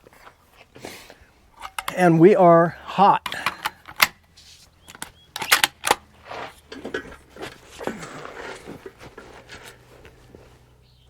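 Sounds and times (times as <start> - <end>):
shuffling and handling noise: 0.0 - 11.0
rifle metallic clicks: 1.6 - 2.1, 3.2 - 4.2, 4.8 - 6.1.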